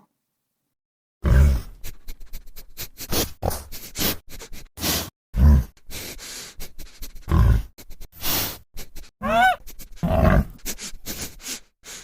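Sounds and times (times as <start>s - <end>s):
panda pitched call: 9.2s - 9.6s
panda low grunts: 9.2s - 10.6s.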